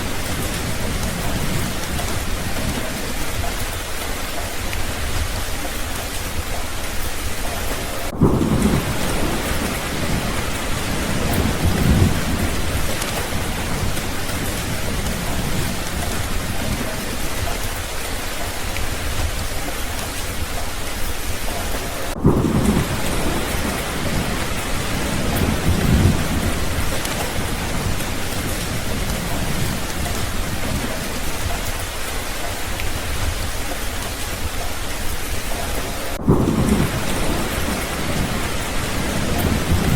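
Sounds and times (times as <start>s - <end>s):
heavy rain falling: 0.0s - 39.9s
thunder rumbling: 0.0s - 39.9s.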